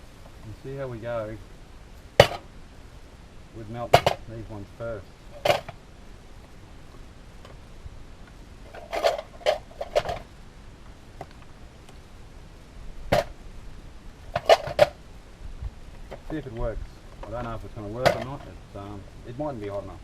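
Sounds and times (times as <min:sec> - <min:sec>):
lead pieces clunking into metal tin: 0:14.4 - 0:15.0, 0:18.0 - 0:18.5.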